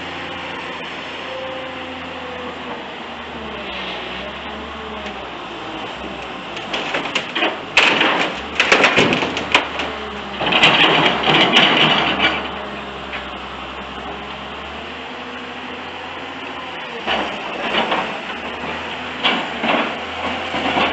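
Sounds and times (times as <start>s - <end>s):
sharp clattering knocks and rattles: 6.6s - 12.6s.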